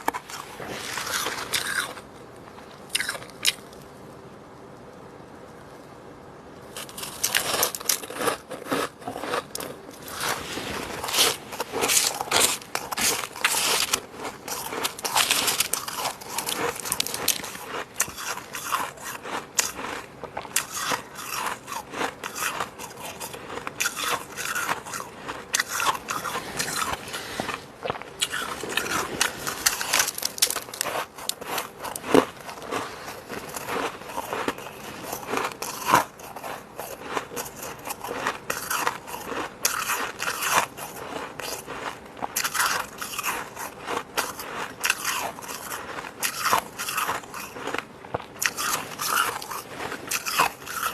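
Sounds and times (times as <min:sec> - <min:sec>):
biting and crunching frost: 0:00.0 - 0:03.9, 0:06.7 - 0:50.9.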